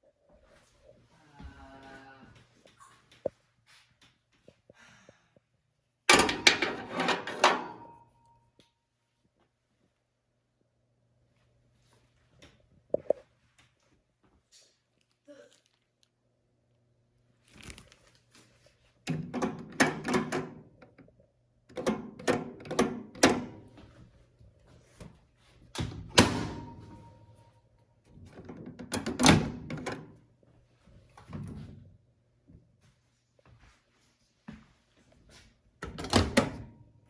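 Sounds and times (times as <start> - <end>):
microwave door thunk: 26.0 - 27.0.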